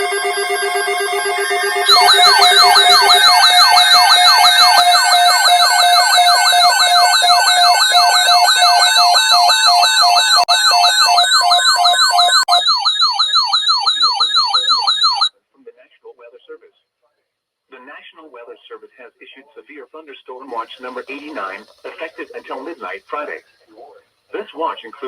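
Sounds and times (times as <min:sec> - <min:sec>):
steady pulsing beep: 0:00.0 - 0:15.3
sweeping yelp siren tone: 0:00.0 - 0:15.3
warbling high tone: 0:00.0 - 0:15.3.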